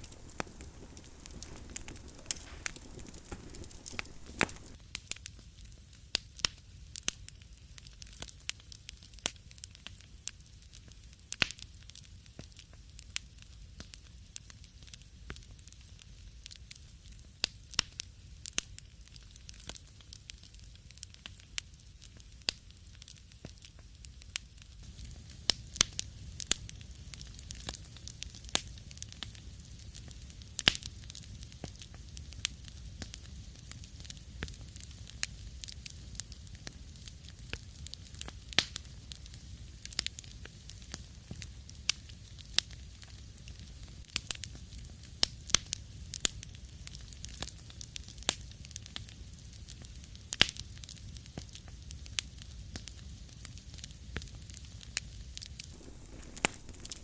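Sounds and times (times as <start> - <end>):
wood fire crackling: 0.0 - 4.8, 24.8 - 57.0.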